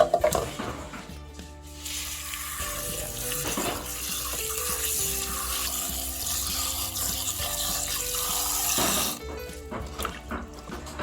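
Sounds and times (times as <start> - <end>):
background music: 0.0 - 11.0
water running: 1.7 - 11.0.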